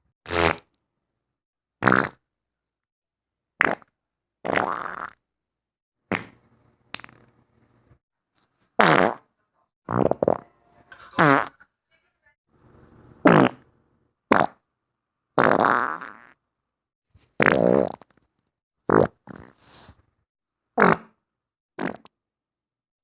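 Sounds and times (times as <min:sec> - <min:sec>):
loud farts: 0:00.3 - 0:00.7, 0:01.8 - 0:02.2, 0:03.6 - 0:05.2, 0:06.1 - 0:06.4, 0:08.8 - 0:09.2, 0:09.9 - 0:10.5, 0:11.2 - 0:11.6, 0:13.2 - 0:13.6, 0:14.3 - 0:14.6, 0:15.4 - 0:16.4, 0:17.4 - 0:18.1, 0:18.9 - 0:19.6, 0:20.8 - 0:21.2, 0:21.8 - 0:22.1.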